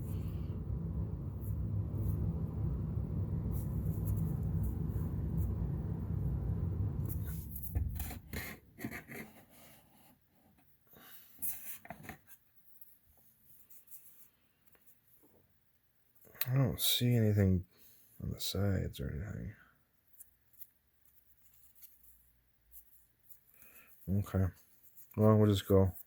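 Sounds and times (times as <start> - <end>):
low steady rumble: 0.0 - 8.9.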